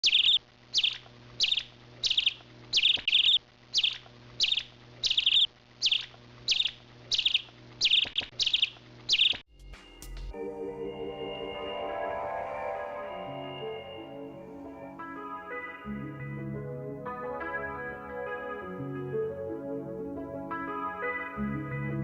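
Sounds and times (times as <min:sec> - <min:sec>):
small bird chirping: 0:00.0 - 0:09.4.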